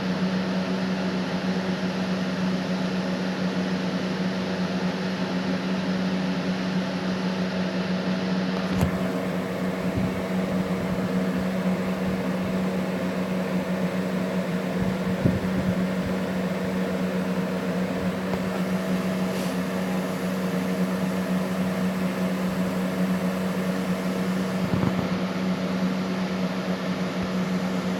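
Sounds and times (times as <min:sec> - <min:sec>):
hiss: 0:19.0 - 0:20.0.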